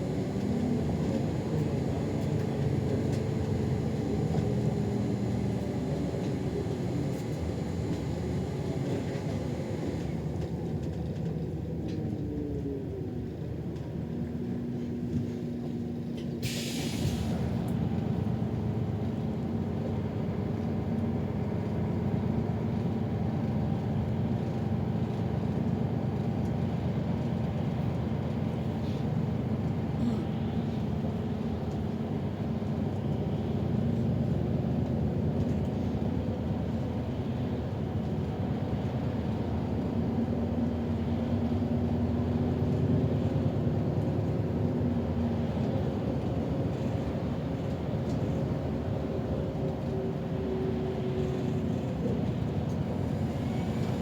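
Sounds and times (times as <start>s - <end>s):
bus engine and road rumble: 0.0s - 54.0s
air hiss: 16.4s - 17.3s.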